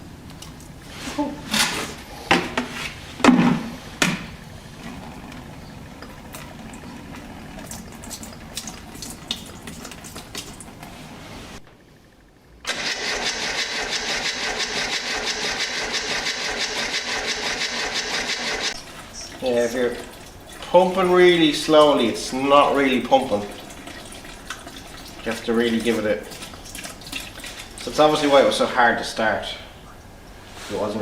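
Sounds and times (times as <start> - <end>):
starter motor cranking engine: 12.6 - 20.0.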